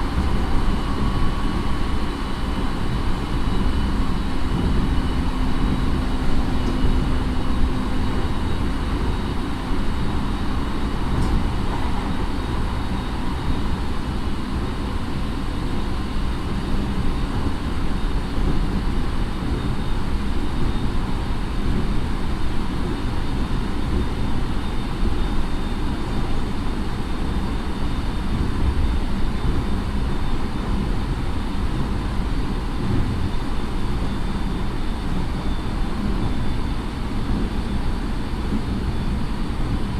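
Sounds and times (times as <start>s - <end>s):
train wheel and track rumble: 0.0s - 39.9s.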